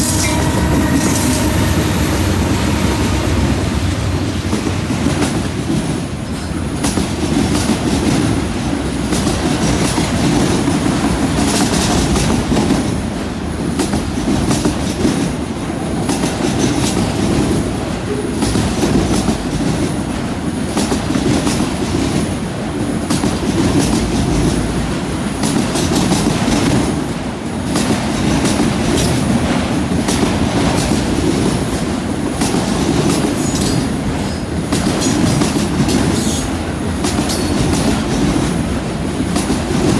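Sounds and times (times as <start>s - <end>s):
faint high wheel squeal: 0.0s - 4.2s
freight train wheels rumbling on rail: 0.0s - 39.9s
wheels clacking over rail joints: 0.0s - 39.9s.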